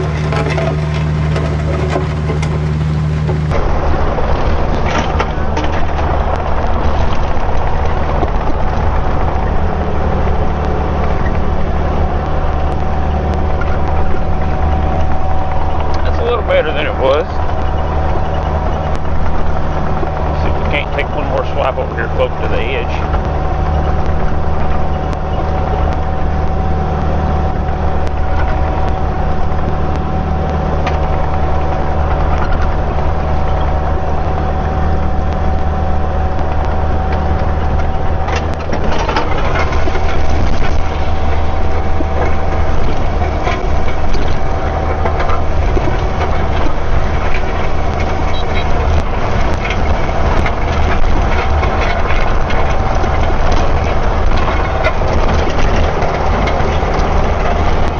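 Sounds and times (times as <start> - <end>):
diesel engine running: 0.0 - 57.9.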